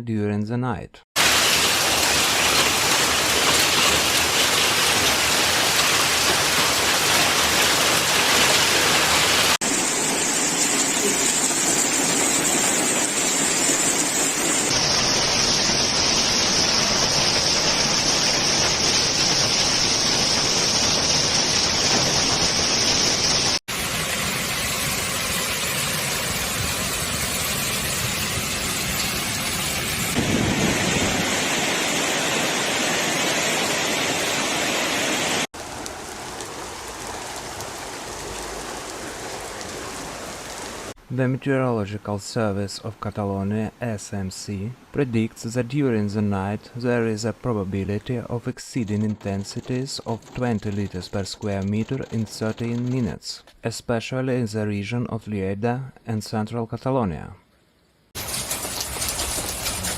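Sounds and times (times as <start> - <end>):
heavy rain pouring: 1.2 - 41.0, 58.2 - 59.9.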